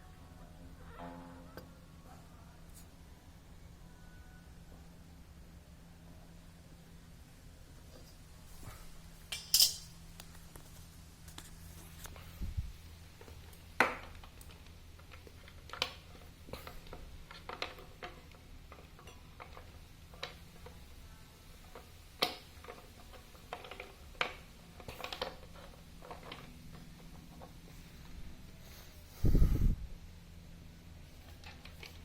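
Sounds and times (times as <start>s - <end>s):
faint low hum: 0.0s - 22.0s
objects clicking and knocking: 9.3s - 12.3s, 13.2s - 21.0s, 21.6s - 27.8s.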